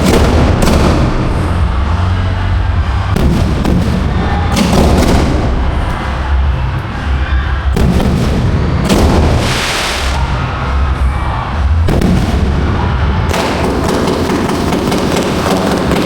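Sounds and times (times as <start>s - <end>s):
fireworks bursting: 0.0s - 1.9s, 3.2s - 6.6s, 7.8s - 10.4s, 13.3s - 16.0s
music playing: 0.0s - 16.0s
fireworks crackling: 8.9s - 10.4s.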